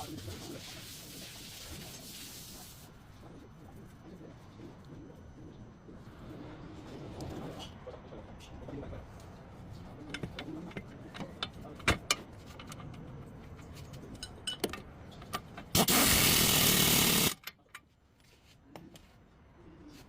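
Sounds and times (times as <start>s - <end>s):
loud burst of noise: 15.7s - 17.4s.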